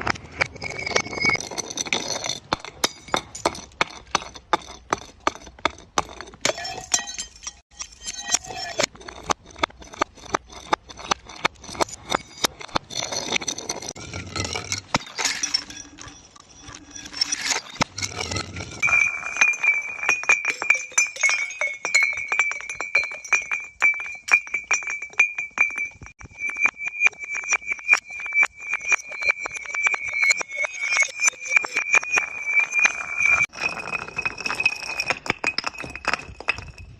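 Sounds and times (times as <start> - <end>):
glass bottles clinking and breaking: 0.0 - 36.9
high ringing tone: 14.1 - 33.5.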